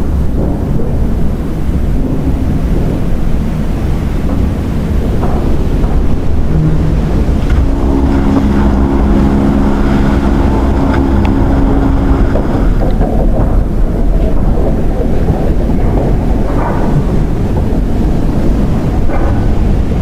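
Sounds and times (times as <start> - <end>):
storm wind: 0.0 - 20.0
waves: 0.0 - 20.0
ship steam whistle blast: 6.6 - 12.8.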